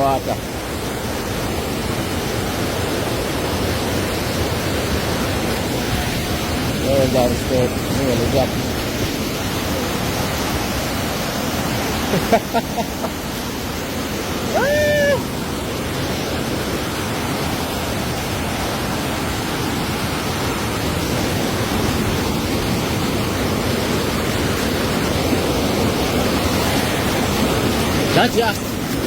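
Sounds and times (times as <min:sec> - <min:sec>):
rushing water: 0:00.0 - 0:29.0
voice calling out: 0:14.5 - 0:15.3.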